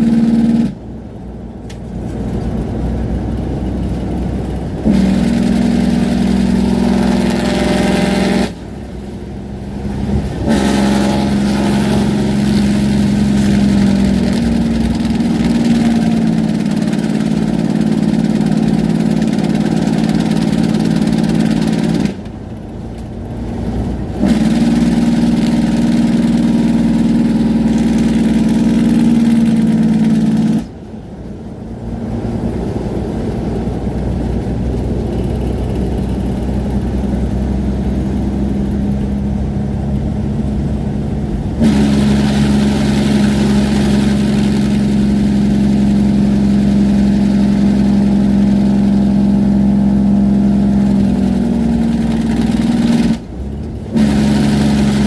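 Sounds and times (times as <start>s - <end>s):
truck engine and road noise: 0.0s - 55.0s
truck engine brake droning: 1.6s - 31.0s.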